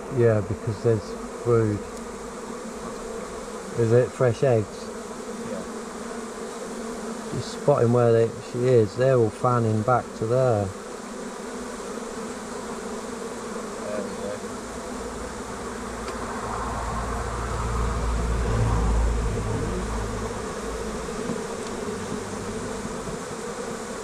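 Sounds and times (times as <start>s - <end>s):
bees buzzing: 0.0s - 24.0s
low rumble: 16.2s - 20.4s.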